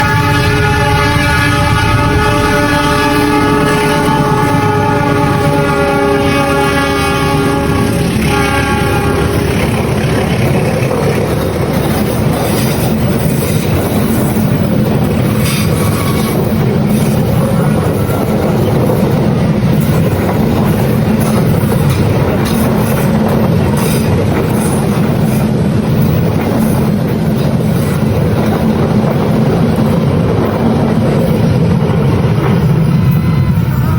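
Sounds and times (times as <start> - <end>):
train horn chord: 0.0 - 10.1, 33.0 - 33.9
train rumble and wheel clatter: 0.0 - 33.9.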